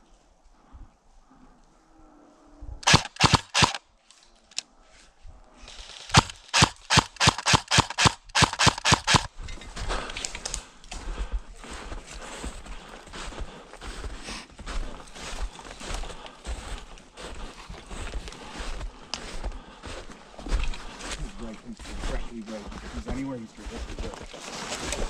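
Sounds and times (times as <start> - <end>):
airsoft gun shots: 2.8 - 3.8, 6.1 - 9.3
scuffing noise: 11.0 - 25.0.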